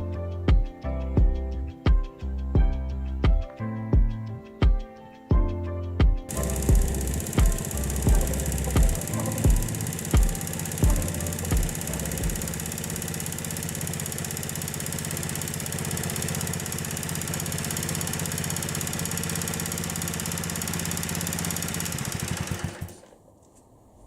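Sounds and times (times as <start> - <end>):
small motorcycle engine idling: 6.3 - 23.2.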